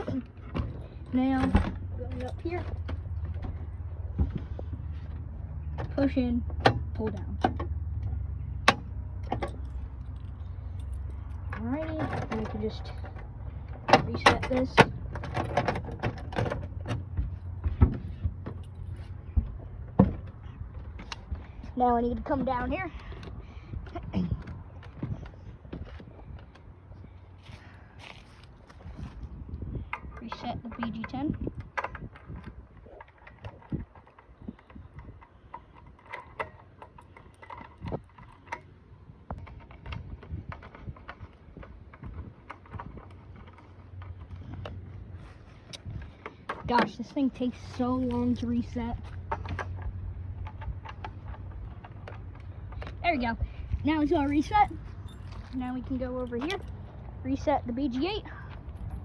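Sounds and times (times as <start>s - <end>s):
handle clicks and rattles: 0.0s - 27.3s, 28.5s - 59.0s
latch clunks: 5.7s - 19.1s.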